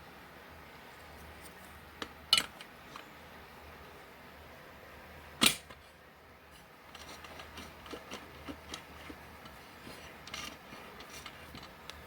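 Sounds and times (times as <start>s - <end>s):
steady low hum: 0.0s - 12.0s
scrape of small parts: 6.5s - 12.0s
small parts clicking and rubbing: 6.6s - 12.0s.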